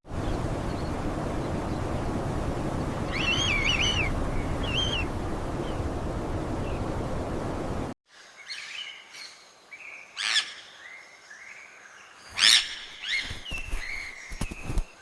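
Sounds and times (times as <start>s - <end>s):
steady rushing noise: 0.0s - 8.0s
loud sweeping bird calls: 0.1s - 7.0s, 8.2s - 14.8s
birds chirping and calling: 0.2s - 7.0s.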